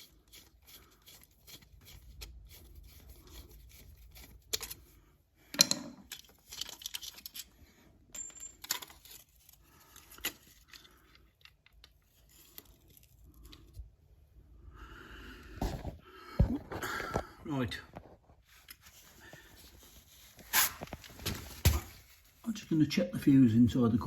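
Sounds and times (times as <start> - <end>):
rustling: 18.4 - 22.6.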